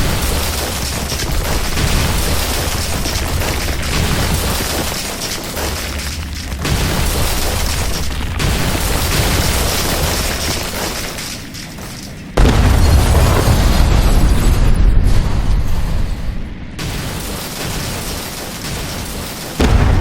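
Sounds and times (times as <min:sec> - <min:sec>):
crashing and crumbling rumble: 0:00.0 - 0:20.0.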